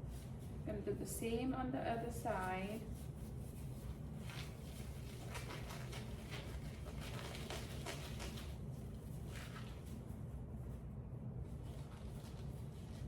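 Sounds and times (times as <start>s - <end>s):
glove rustling and crinkling: 3.5s - 10.2s.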